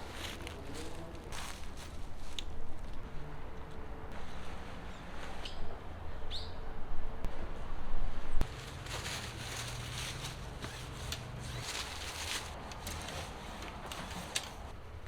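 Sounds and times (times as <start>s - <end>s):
rustling and soft crackling: 0.0s - 3.0s, 8.3s - 14.8s.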